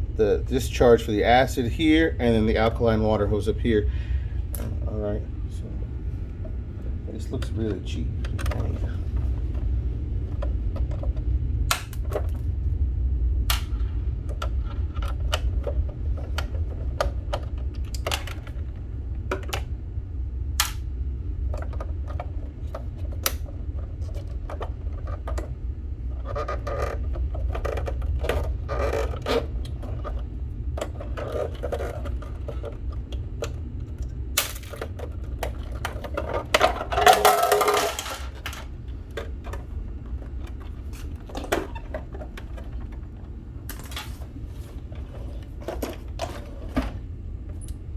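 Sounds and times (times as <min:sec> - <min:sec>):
steady low rumble: 0:00.0 - 0:47.9
plastic and metal parts clattering: 0:07.3 - 0:12.5, 0:15.0 - 0:19.7, 0:26.2 - 0:47.7.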